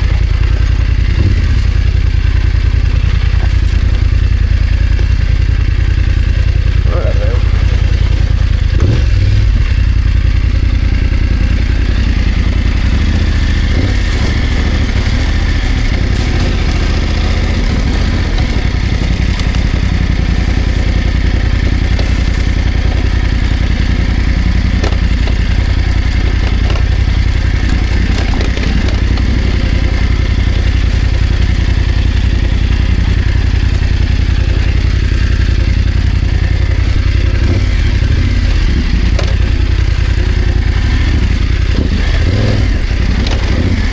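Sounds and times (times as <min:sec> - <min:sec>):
motorcycle engine running: 0:00.0 - 0:43.9
motorcycle knocks and rattles: 0:00.0 - 0:43.9.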